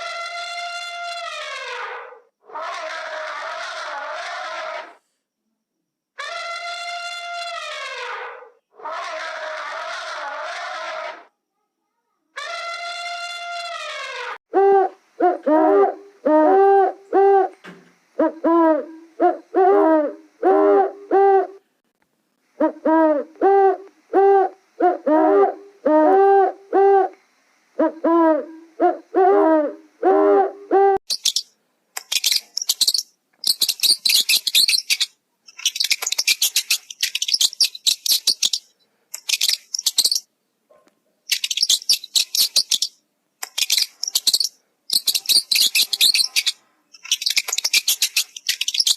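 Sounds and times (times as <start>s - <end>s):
animal hooting calls: 0.0s - 4.9s, 6.2s - 11.3s, 12.4s - 17.6s, 18.2s - 21.6s, 27.8s - 31.0s
high-pitched chirping: 31.0s - 40.3s, 41.3s - 48.9s.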